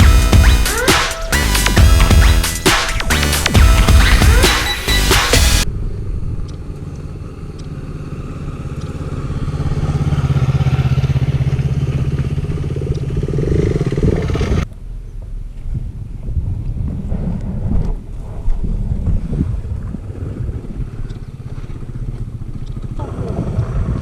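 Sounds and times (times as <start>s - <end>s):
low rumble: 0.0s - 0.7s, 1.3s - 7.4s
motorcycle engine running: 0.0s - 14.7s, 19.8s - 23.1s
wind noise on microphone: 13.5s - 24.0s.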